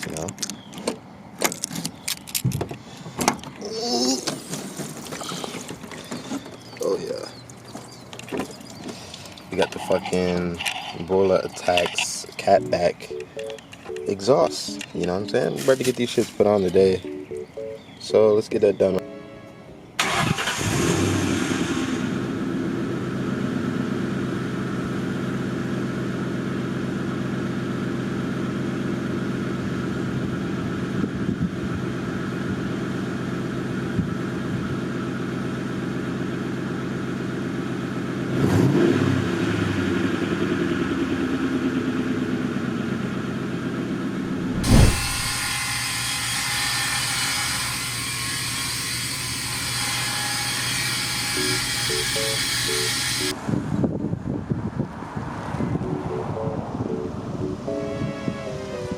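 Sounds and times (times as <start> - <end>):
engine revving: 20.0 - 22.4, 38.3 - 39.9, 44.3 - 45.6
car engine starting and idling: 20.0 - 28.0.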